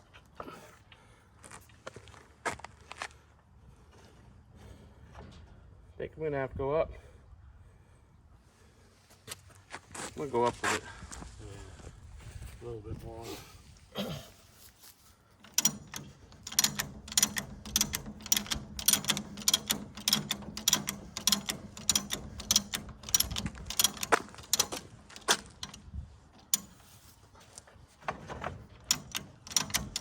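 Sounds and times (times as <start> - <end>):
car jack ratcheting clicks: 15.4 - 27.0, 28.8 - 30.0.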